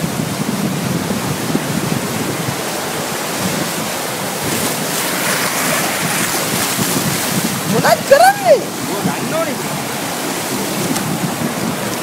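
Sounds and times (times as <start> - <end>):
sea water rushing: 0.0 - 12.0
wind: 0.0 - 12.0.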